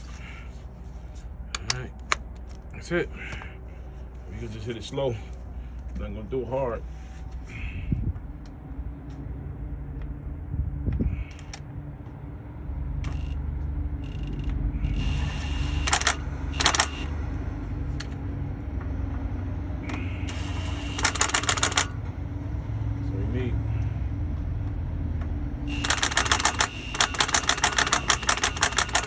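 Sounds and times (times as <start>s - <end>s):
low hum: 6.9s - 29.0s
impact wrench hammering: 25.7s - 29.0s.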